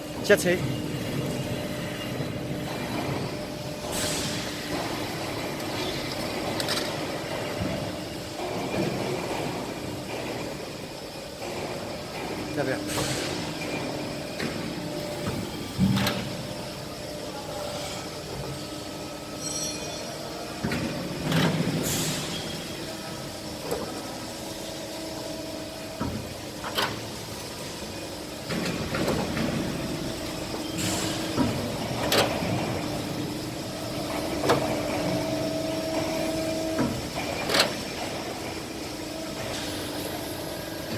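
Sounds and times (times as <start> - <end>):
hydraulic power unit humming: 0.0 - 40.9
air hiss bursts: 3.8 - 4.6, 21.8 - 22.4.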